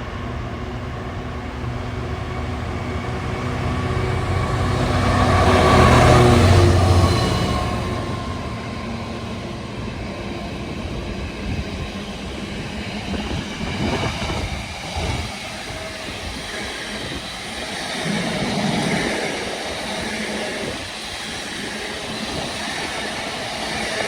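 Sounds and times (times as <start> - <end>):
freight train rolling past: 0.0 - 24.0.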